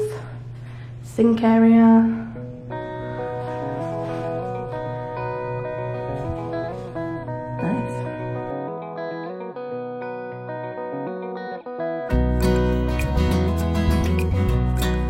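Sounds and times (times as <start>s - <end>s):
guitar background music: 1.5s - 15.0s
bass: 12.1s - 15.0s.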